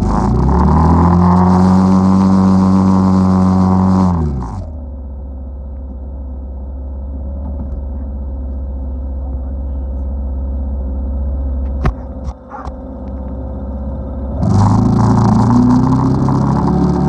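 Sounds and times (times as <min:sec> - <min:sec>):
atv engine idling: 0:01.4 - 0:14.4.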